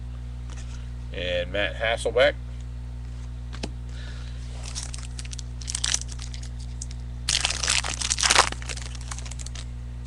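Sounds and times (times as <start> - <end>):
plastic wrapper crinkling and tearing: 4.6 - 9.7.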